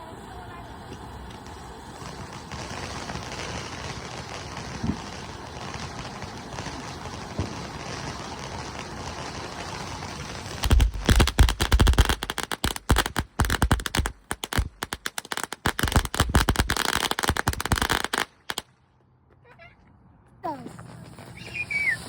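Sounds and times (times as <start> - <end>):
steady hiss: 0.0 - 15.7
fireworks popping and crackling: 0.0 - 18.7, 20.6 - 22.0.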